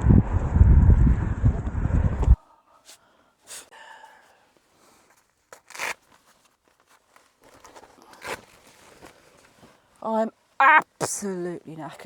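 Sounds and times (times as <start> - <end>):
wind noise on microphone: 0.0 - 2.4
soft rustles and clicks: 4.6 - 9.9.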